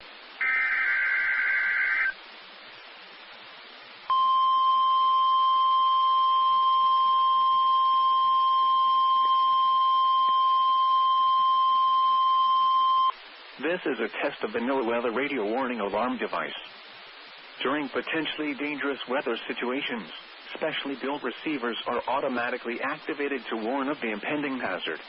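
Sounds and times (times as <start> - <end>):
steady warning alarm tone: 0.4 - 2.2
warbling data screech: 0.4 - 2.2.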